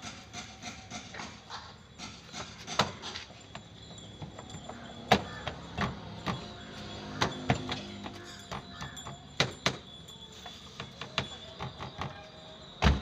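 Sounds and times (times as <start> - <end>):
knocks and clicks on car parts: 4.2 - 6.6, 7.2 - 9.9.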